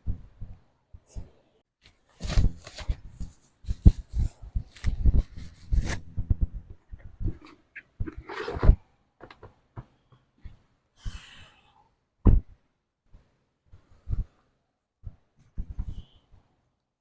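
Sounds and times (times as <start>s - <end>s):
knocks and thumps: 12.2s - 12.6s.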